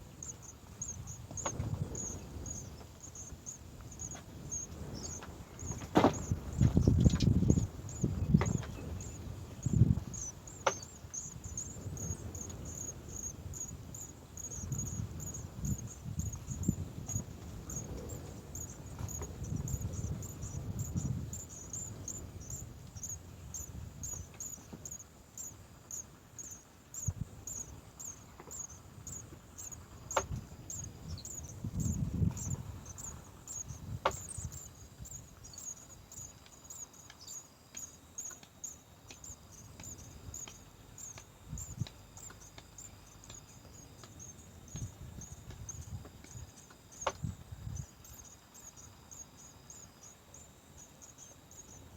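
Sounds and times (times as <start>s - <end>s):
insect chirping high-pitched pulses: 0.0s - 51.9s
low rustling rumbles: 0.2s - 24.6s, 27.1s - 36.8s.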